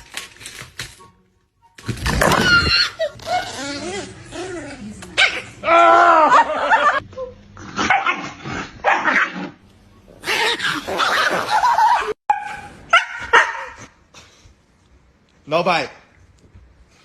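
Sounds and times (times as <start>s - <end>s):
dog whining: 2.3s - 5.6s
dog barking and yipping: 7.8s - 9.4s, 10.4s - 13.9s.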